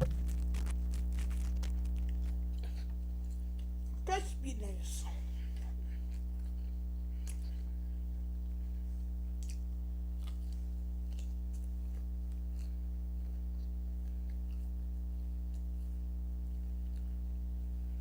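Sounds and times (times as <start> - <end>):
crunchy food being chewed: 0.0 - 4.0, 5.5 - 18.0
low electrical hum: 0.0 - 18.0.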